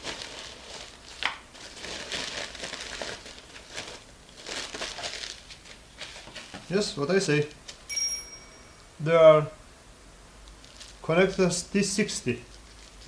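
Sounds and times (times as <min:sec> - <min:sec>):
packaging crinkling and rustling: 0:00.0 - 0:06.8, 0:10.4 - 0:11.5, 0:12.4 - 0:13.0.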